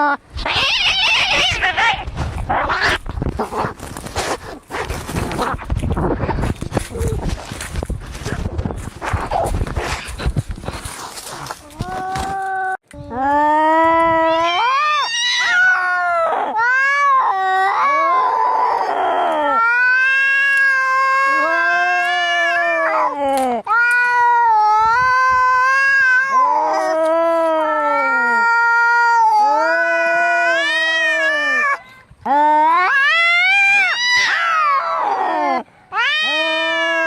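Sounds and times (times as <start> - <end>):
cats yowling: 0.4 - 3.0, 14.1 - 31.8, 32.4 - 37.0.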